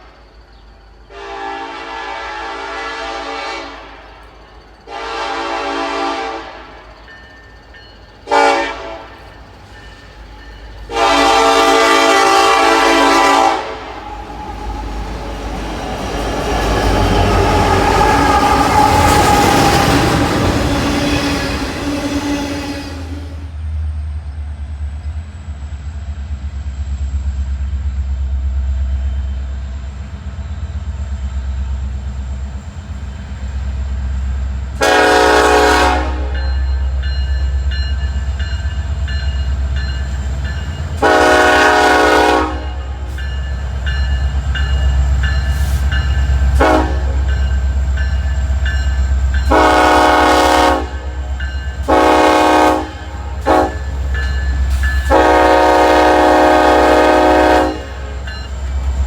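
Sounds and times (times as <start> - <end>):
locomotive horn blasts: 1.1 - 4.1, 4.9 - 6.7, 8.2 - 9.2, 10.9 - 14.8, 34.8 - 36.9, 41.0 - 43.1, 46.4 - 47.5, 49.4 - 58.4.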